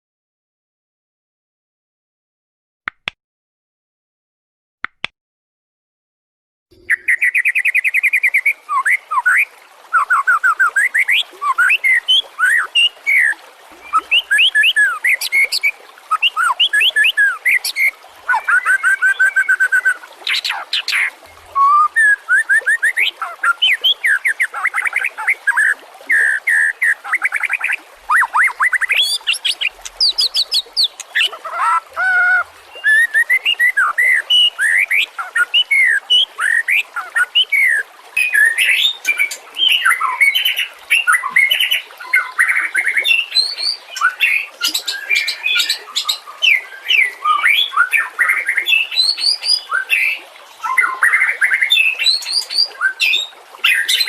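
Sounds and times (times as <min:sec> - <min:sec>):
short clicks: 0:02.9 - 0:03.2, 0:04.8 - 0:05.1
songbird singing: 0:06.7 - 0:54.0.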